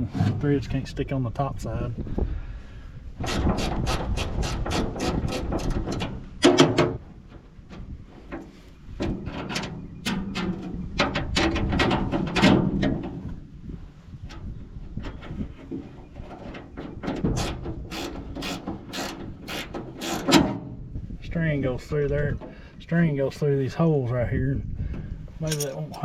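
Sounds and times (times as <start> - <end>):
metal clank: 25.4 - 26.0.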